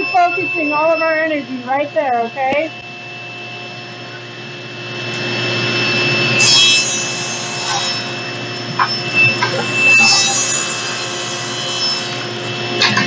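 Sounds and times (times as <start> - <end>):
table saw whine: 0.0 - 13.0
saw blade cutting board: 5.8 - 13.0.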